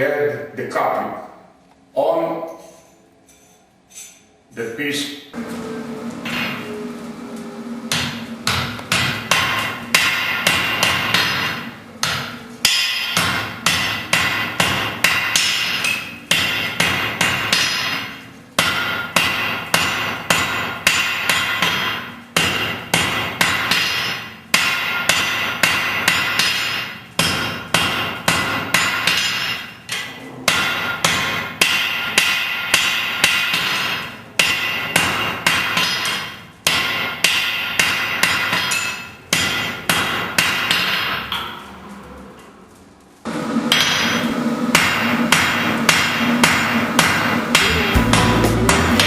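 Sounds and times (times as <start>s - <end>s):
hammer ringing on steel anvil: 47.5s - 49.0s.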